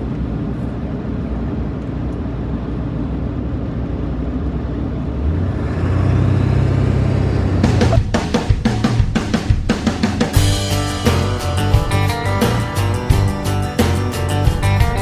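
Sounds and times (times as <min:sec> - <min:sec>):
vehicle road and engine noise: 0:00.0 - 0:15.0.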